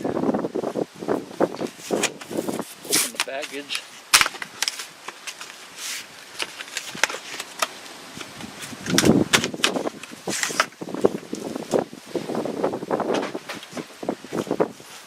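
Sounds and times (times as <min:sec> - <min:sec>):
plastic packaging crinkling: 0:01.7 - 0:11.5.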